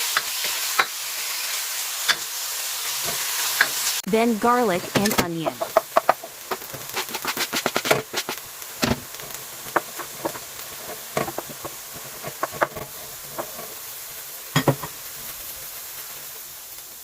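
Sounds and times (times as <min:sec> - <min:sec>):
food sizzling in hot oil: 0:00.0 - 0:17.0
spatula scraping pan: 0:05.0 - 0:15.3.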